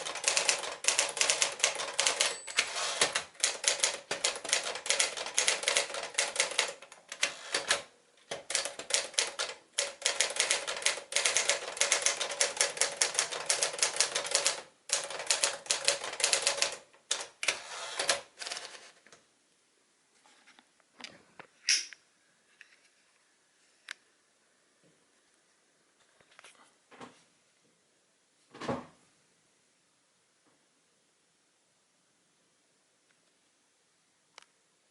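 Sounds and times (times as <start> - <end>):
manual typewriter key strikes: 0.0 - 18.2.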